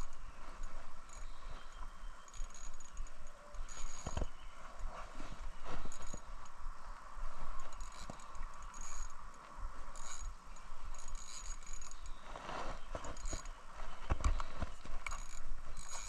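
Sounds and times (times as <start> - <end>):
fishing reel whirring: 0.0 - 4.9, 5.5 - 6.6, 7.2 - 12.2, 13.0 - 13.5, 15.0 - 16.0.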